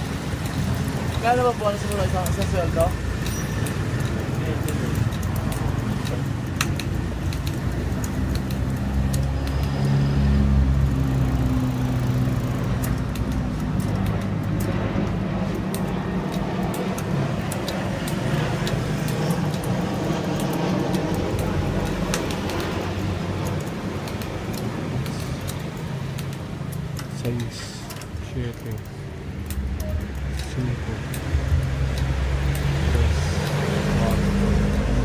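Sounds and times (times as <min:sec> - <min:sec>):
road traffic: 0:00.0 - 0:35.0
vehicle engine passing: 0:00.0 - 0:35.0.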